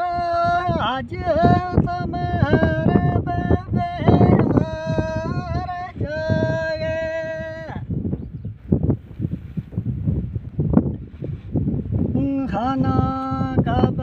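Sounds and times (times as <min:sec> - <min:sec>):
man singing unaccompanied: 0:00.0 - 0:07.9, 0:12.0 - 0:14.0
wind noise on microphone: 0:00.0 - 0:14.0.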